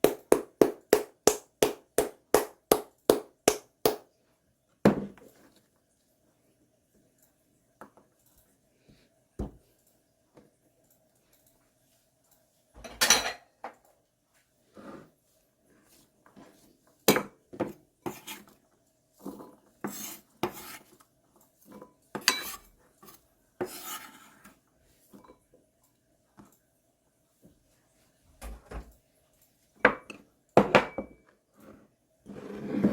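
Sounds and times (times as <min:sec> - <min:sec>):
utensils and dishes clinking: 0:12.8 - 0:13.8, 0:21.7 - 0:22.7
utensil scraping: 0:19.8 - 0:20.9, 0:22.3 - 0:24.6.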